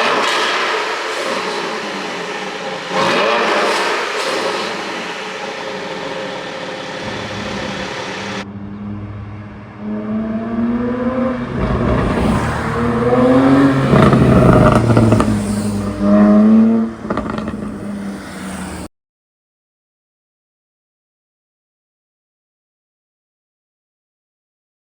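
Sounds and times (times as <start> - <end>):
exhaust crackles and pops: 0.0 - 8.4, 11.6 - 18.4
car engine revving: 0.0 - 18.9.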